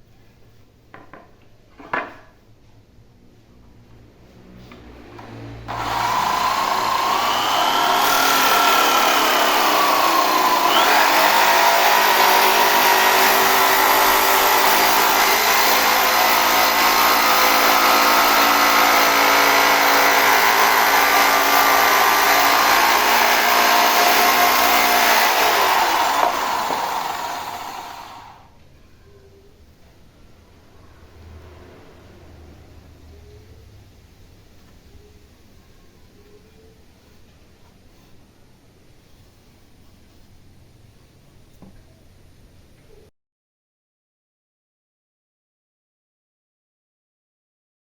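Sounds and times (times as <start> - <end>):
electric drill motor whining: 5.7 - 28.5.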